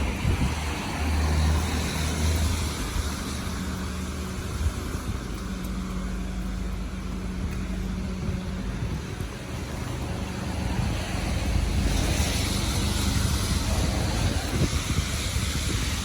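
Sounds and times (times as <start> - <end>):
low engine hum: 0.0 - 16.0
wind rushing: 10.8 - 16.0.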